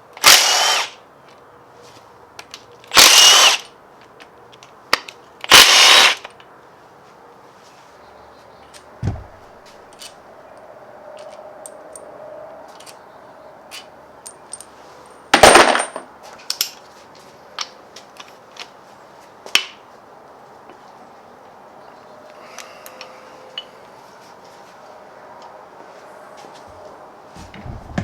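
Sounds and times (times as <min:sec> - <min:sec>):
dull thump: 0:09.0 - 0:09.8, 0:27.4 - 0:28.0.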